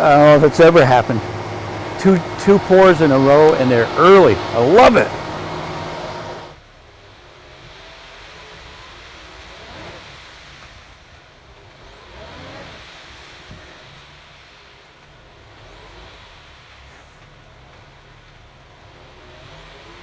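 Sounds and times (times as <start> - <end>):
concrete mixer truck rumbling: 0.0 - 6.6.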